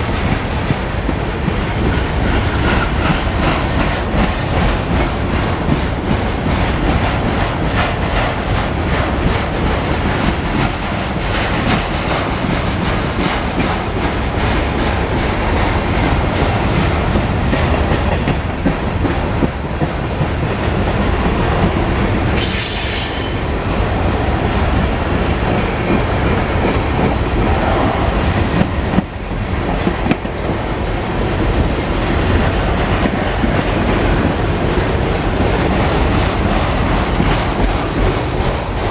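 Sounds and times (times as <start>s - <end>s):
train wheels clattering over rail joints: 0.0s - 23.5s, 28.4s - 38.9s
wheels screeching on rail: 22.3s - 23.6s.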